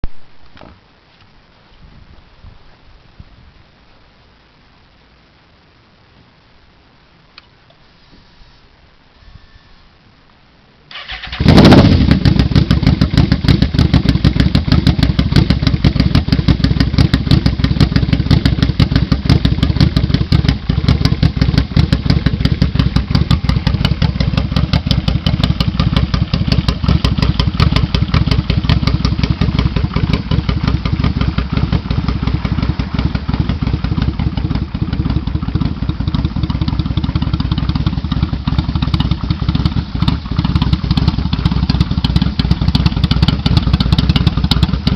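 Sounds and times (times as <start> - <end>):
motorcycle engine starting and idling: 10.9 - 44.9.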